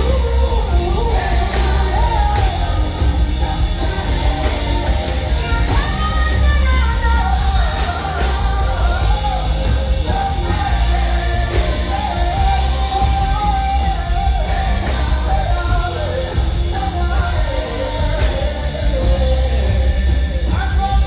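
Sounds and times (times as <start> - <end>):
live band playing: 0.0 - 21.0
person singing: 0.0 - 21.0.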